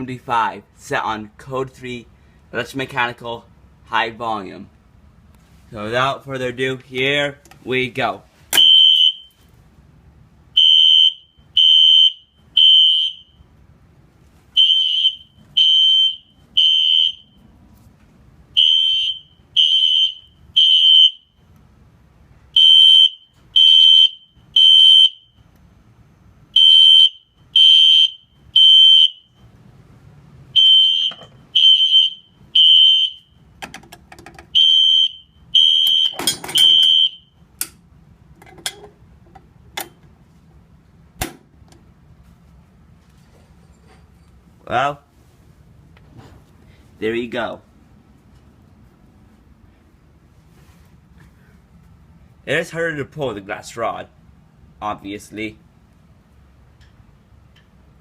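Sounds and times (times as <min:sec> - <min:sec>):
loud alarm horn blasts: 0:14.6 - 0:17.3, 0:30.6 - 0:33.4, 0:34.6 - 0:37.4.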